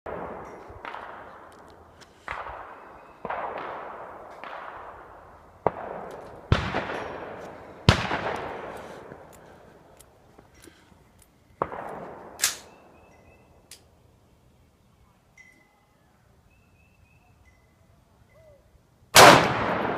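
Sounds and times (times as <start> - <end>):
gunshots with echo: 0.1 - 1.6, 2.2 - 9.3, 19.2 - 19.9.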